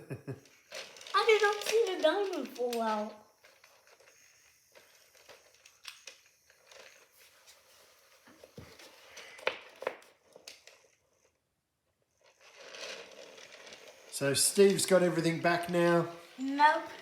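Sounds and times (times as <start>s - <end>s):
plastic toy pieces clicking: 0.8s - 4.0s.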